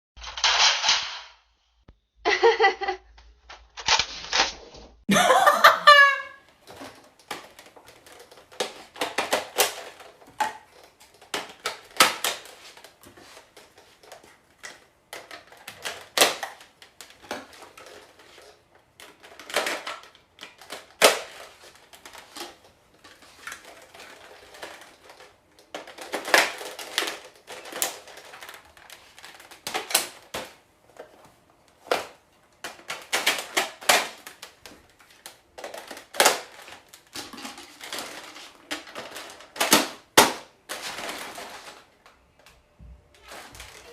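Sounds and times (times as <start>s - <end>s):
toy blaster clicking and rattling: 0.2s - 1.2s.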